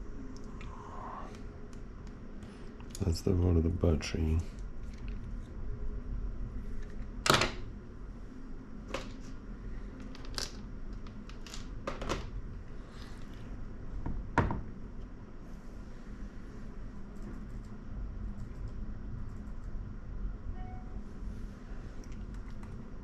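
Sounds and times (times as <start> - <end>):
low steady hum: 0.0 - 23.0.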